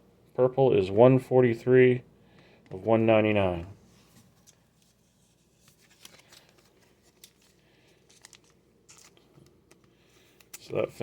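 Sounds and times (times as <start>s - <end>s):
trading cards rustling and clicking: 4.0s - 11.0s.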